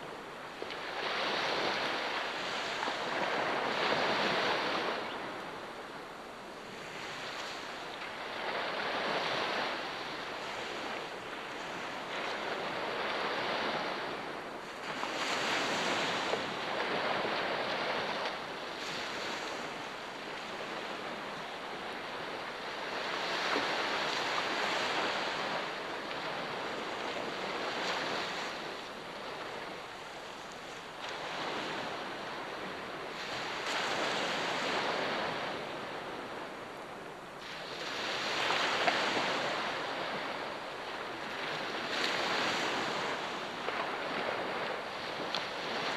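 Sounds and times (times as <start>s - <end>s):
ocean waves breaking on shore: 0.0s - 45.9s.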